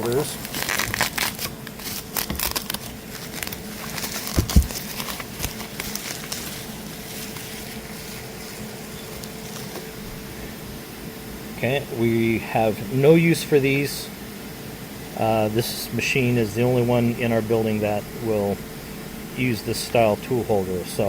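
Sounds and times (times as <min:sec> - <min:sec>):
steady hum: 0:00.0 - 0:21.0
handling rustling and clicks: 0:00.4 - 0:10.0.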